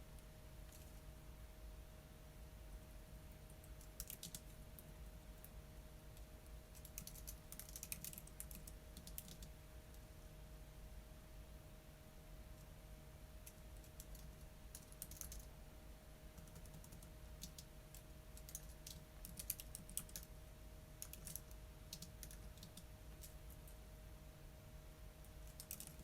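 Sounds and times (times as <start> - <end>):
faint steady hum: 0.0 - 26.0
computer keyboard typing: 3.8 - 4.9, 6.7 - 9.5, 13.4 - 15.5, 16.4 - 20.3, 21.0 - 23.7, 25.4 - 26.0.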